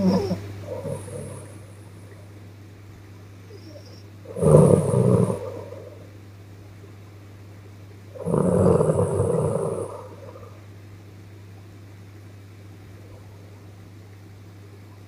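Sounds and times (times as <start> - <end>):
woman snoring softly: 0.0 - 1.6, 3.6 - 6.1, 8.2 - 10.6
low hum: 0.0 - 15.0.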